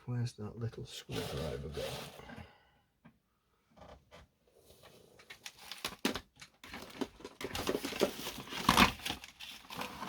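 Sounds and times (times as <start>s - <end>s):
tools and cables clicking and rustling: 5.2s - 10.0s.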